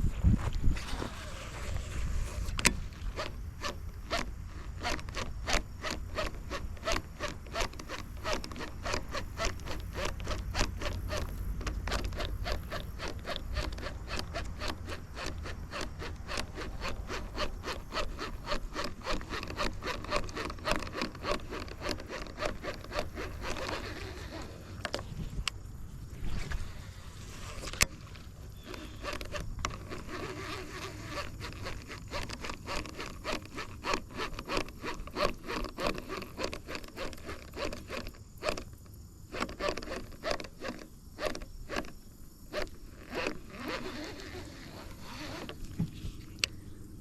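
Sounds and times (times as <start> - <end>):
low rumble of wind: 0.0 - 36.4
fishing reel cranking: 0.9 - 25.6, 27.3 - 46.6.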